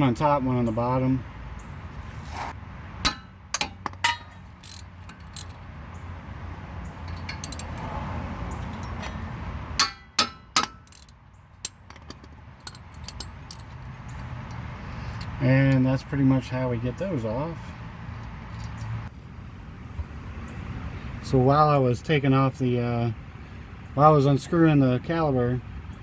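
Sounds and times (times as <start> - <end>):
metal hand tools clinking: 3.1 - 5.6, 7.0 - 7.9, 8.6 - 14.4.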